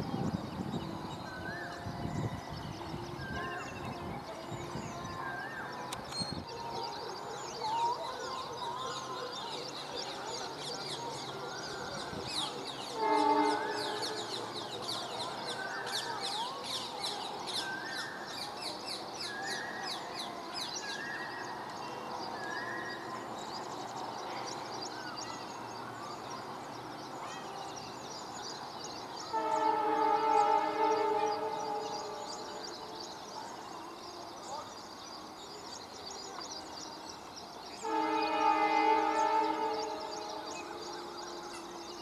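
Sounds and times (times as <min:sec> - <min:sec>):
locomotive air horn blast: 0:12.8 - 0:14.8, 0:29.3 - 0:33.0, 0:37.8 - 0:42.0.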